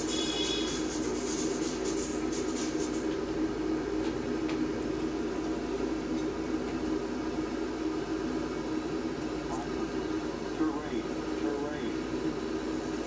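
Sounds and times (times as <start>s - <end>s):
mechanical hum: 0.0s - 13.0s.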